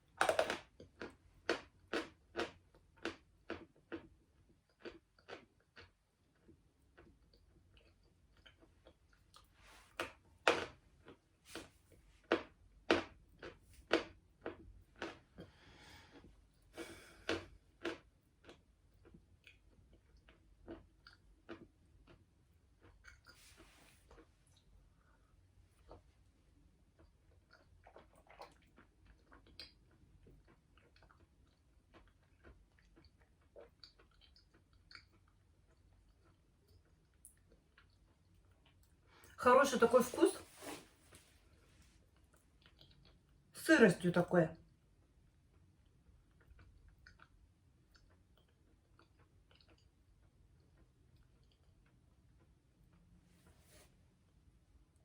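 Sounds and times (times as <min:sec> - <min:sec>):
chewing chalk crunches: 0:00.0 - 0:15.5, 0:16.8 - 0:24.7.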